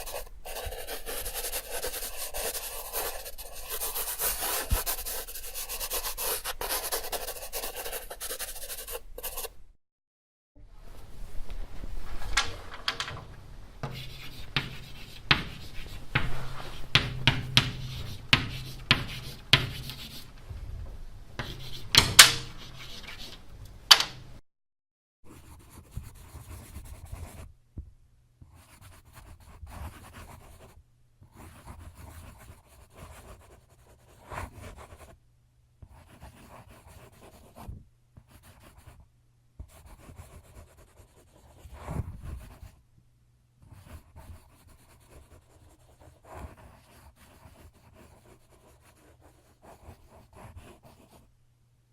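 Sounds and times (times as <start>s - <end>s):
pen writing on paper: 0.0s - 9.5s, 13.8s - 20.3s, 21.4s - 23.4s, 31.3s - 35.0s, 39.7s - 42.7s, 43.7s - 51.2s
pen taps on paper: 13.8s - 20.1s.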